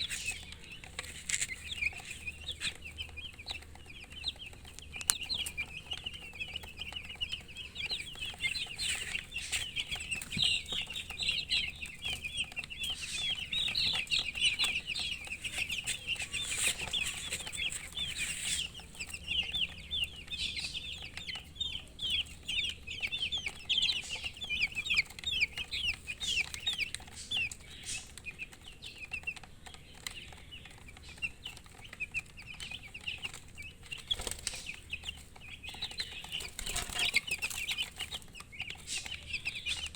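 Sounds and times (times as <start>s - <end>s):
baby chicks peeping: 0.0s - 39.9s.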